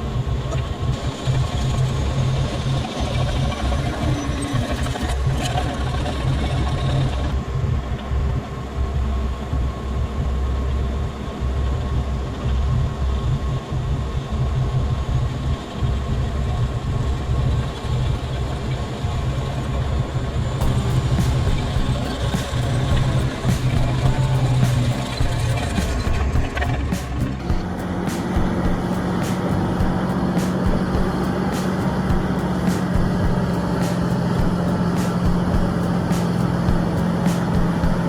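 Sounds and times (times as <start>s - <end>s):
bulldozer diesel engine running: 18.6s - 38.0s.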